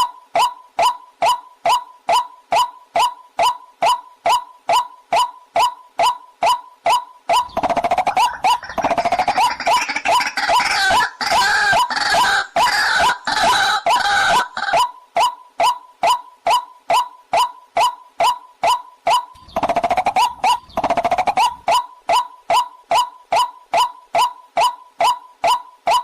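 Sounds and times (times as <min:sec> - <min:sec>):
waterhen calls: 0:07.3 - 0:14.9, 0:18.7 - 0:24.3.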